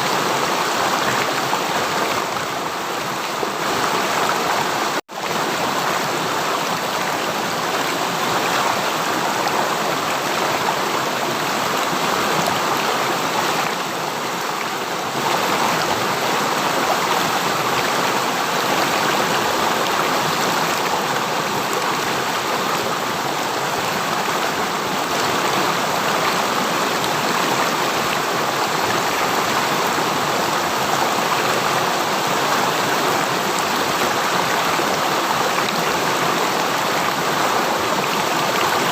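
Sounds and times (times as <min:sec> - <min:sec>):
stream flowing: 0:00.0 - 0:38.9.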